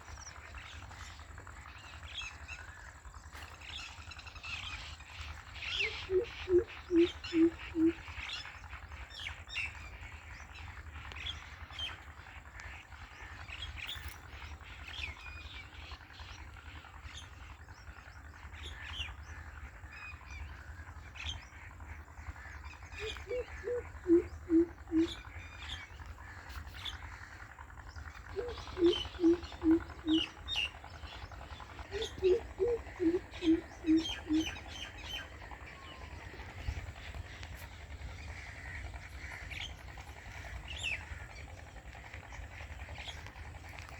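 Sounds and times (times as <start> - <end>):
bird deep hooting calls: 4.6 - 9.8, 18.5 - 43.9
small birds chirping: 4.6 - 43.9.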